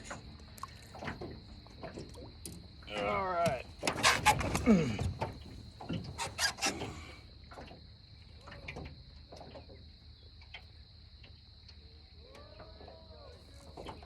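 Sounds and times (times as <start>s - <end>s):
faint ticks: 10.3s - 12.5s.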